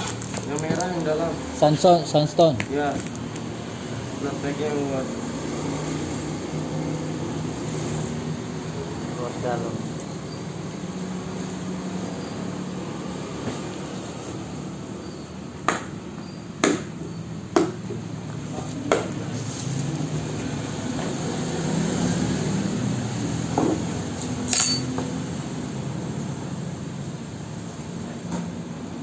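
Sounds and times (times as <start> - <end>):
sharp knocks and clinks: 23.5 - 25.3.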